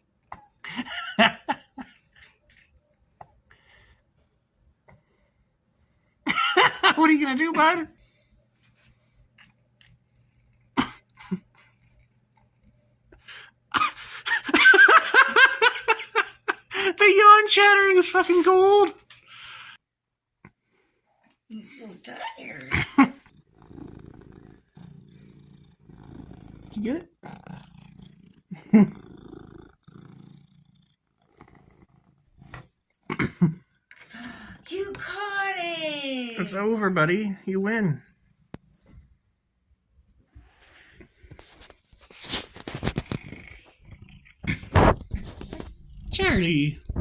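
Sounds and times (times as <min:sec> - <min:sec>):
person laughing: 0:00.7 - 0:02.0, 0:13.7 - 0:17.0, 0:28.5 - 0:28.9, 0:33.1 - 0:33.6
cat purring: 0:07.9 - 0:13.7, 0:22.5 - 0:33.9, 0:40.0 - 0:47.0.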